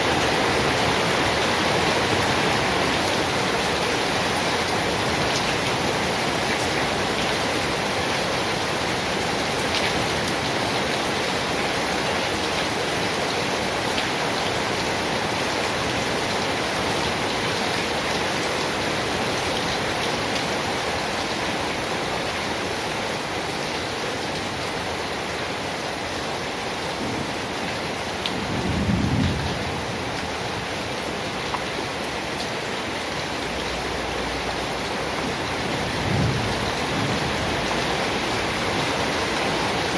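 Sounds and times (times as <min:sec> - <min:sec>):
rain falling: 0:00.0 - 0:39.9
low thunder rumble: 0:28.4 - 0:29.9, 0:35.8 - 0:37.7.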